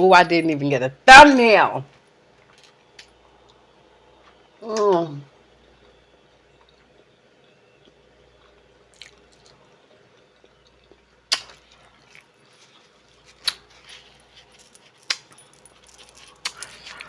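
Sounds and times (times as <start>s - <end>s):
faint eating noises: 1.3s - 17.0s
hard objects clinking: 13.7s - 17.0s.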